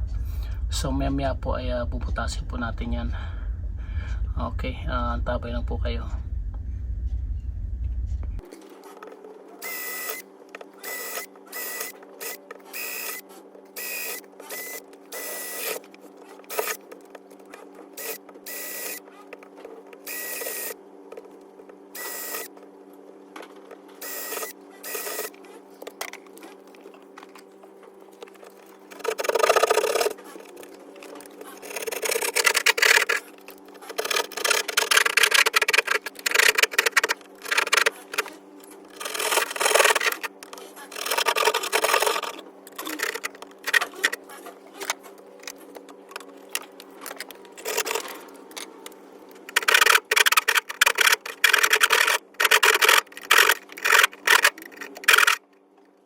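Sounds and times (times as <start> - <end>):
steady low hum: 0.0 - 56.0
cutting into a wall: 28.4 - 45.6, 49.5 - 55.4.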